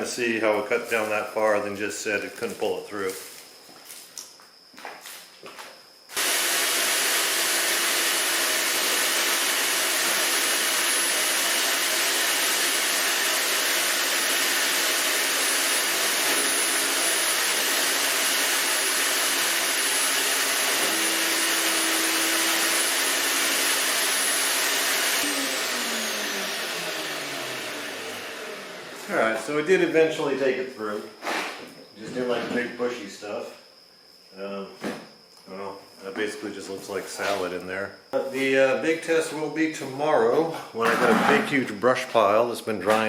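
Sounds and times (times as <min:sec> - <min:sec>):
wood chipper running: 0:06.2 - 0:29.2
wood chipper spinning down whine: 0:22.7 - 0:29.1.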